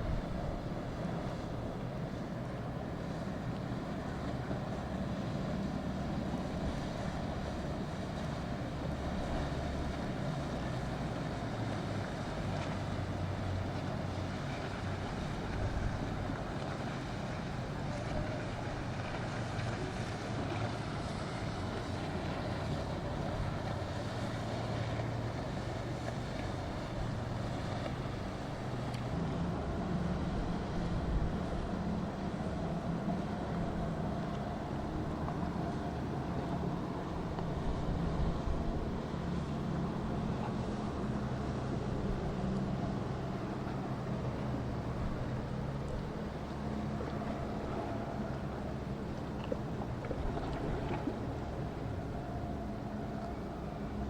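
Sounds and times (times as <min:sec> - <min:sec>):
boat engines humming: 0:00.0 - 0:54.0
waves washing: 0:00.0 - 0:54.0
wind on microphone: 0:37.4 - 0:39.1.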